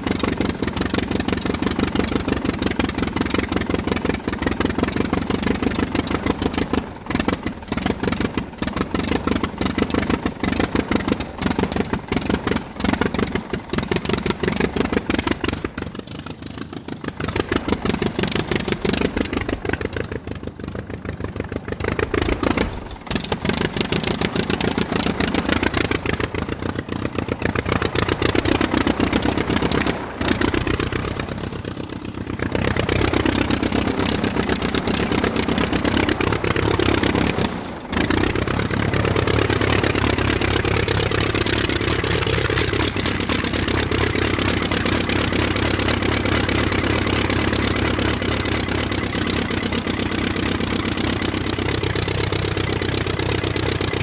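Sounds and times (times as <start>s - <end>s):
aircraft engine running: 0.0s - 54.0s.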